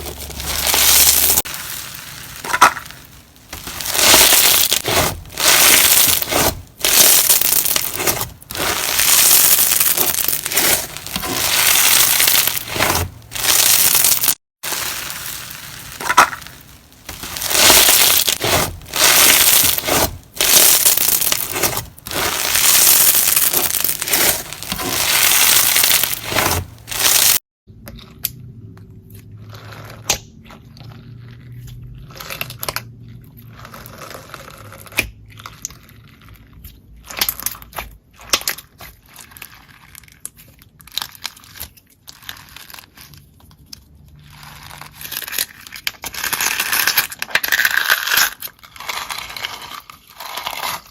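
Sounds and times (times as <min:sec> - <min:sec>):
slime squeezed by hand: 0:00.0 - 0:27.4.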